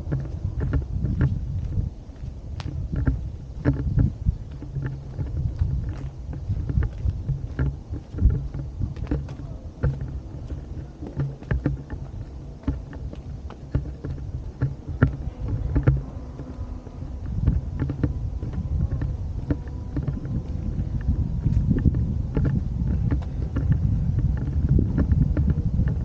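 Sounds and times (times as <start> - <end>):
light clicks and knocks: 0.0 - 26.0
wind buffeting microphone: 0.0 - 26.0.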